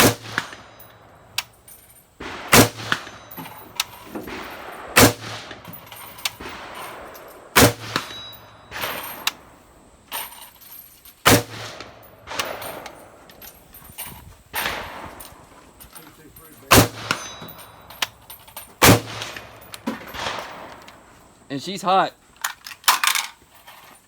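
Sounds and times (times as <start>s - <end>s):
rifle shots echoing: 0.0s - 9.8s, 11.2s - 13.7s, 14.5s - 21.2s
faint bangs: 0.0s - 21.4s.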